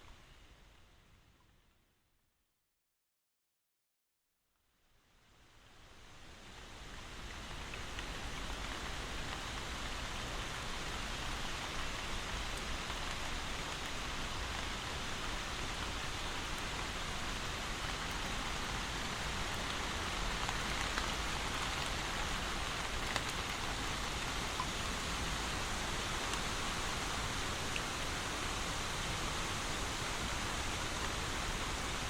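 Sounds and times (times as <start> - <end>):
steady rain falling: 0.0 - 1.4, 5.1 - 32.0.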